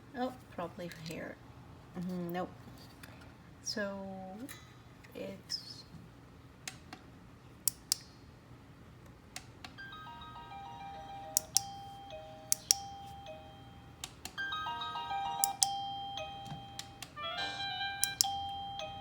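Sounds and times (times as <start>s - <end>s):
sharp clicks: 7.7s - 8.1s, 12.5s - 12.8s, 18.0s - 18.4s
electronic doorbell chime melody: 9.8s - 19.0s.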